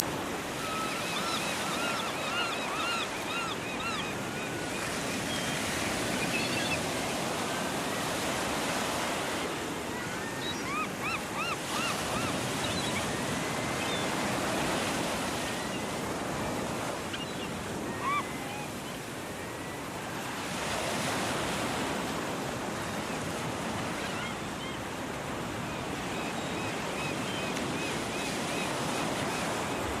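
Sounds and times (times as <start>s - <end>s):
gulls calling: 0.2s - 19.1s.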